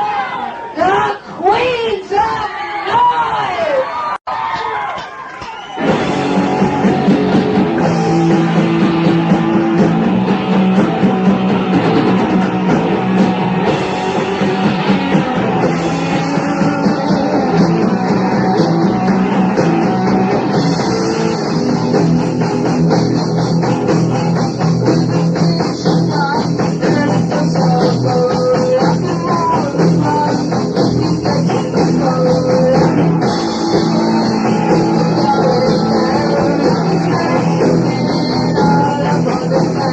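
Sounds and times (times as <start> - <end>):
drum kit: 5.5 - 39.9
electric guitars: 5.5 - 39.9
bass guitar: 5.6 - 39.9.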